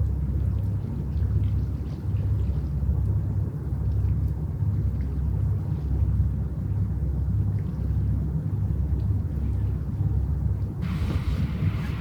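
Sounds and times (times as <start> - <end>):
ship diesel engine rumbling: 10.8 - 12.0.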